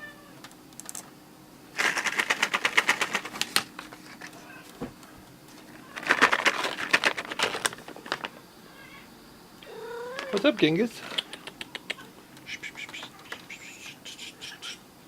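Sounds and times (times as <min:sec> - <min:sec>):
cat treats rattling in container: 0:01.8 - 0:04.3, 0:05.8 - 0:08.4.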